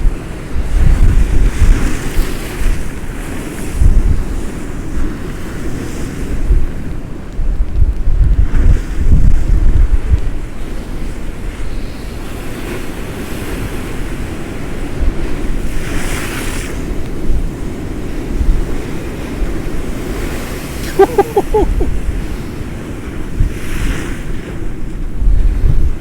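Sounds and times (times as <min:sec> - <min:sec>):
storm surf breaking on sea wall: 0:00.0 - 0:26.0
wind buffeting microphone: 0:00.0 - 0:26.0
short pitched calls: 0:20.9 - 0:21.9.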